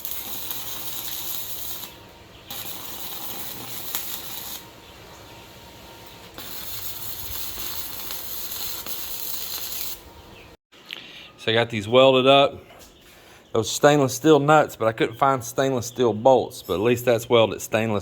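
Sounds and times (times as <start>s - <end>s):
arc welding crackling hiss: 0.0s - 4.7s, 6.3s - 10.1s.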